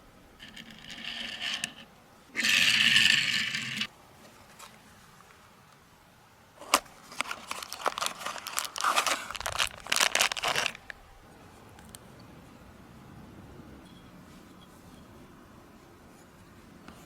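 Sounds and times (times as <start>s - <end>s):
packaging click: 6.6s - 10.9s
packaging crinkling and tearing: 6.6s - 11.0s.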